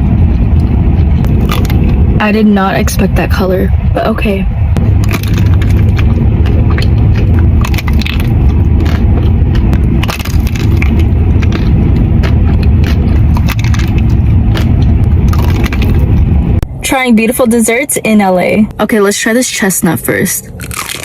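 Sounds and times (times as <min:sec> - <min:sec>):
low steady rumble: 0:00.0 - 0:21.0
person chewing and crunching: 0:01.0 - 0:02.0, 0:04.8 - 0:16.3, 0:20.5 - 0:21.0.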